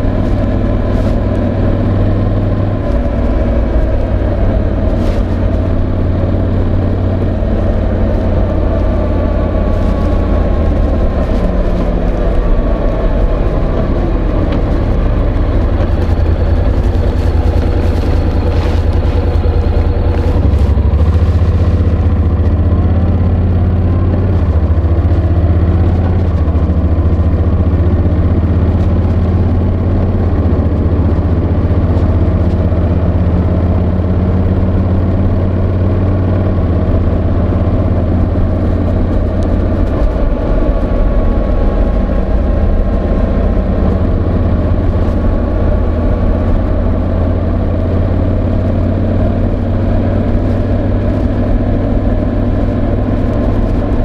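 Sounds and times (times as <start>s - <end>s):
microphone scraping against fabric: 0.0s - 6.1s, 7.5s - 22.2s
motorcycle engine rumbling: 0.0s - 54.0s.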